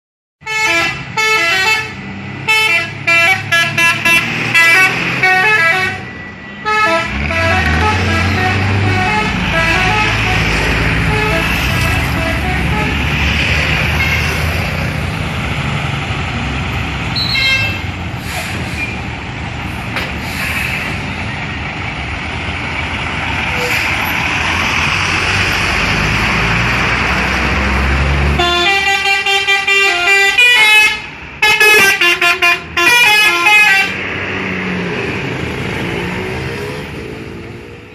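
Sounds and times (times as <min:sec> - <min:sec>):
multi-tone bus horn tune: 0:00.4 - 0:14.6, 0:17.1 - 0:18.0, 0:28.3 - 0:34.0
traffic: 0:00.4 - 0:37.9
bus engine running: 0:00.6 - 0:37.9.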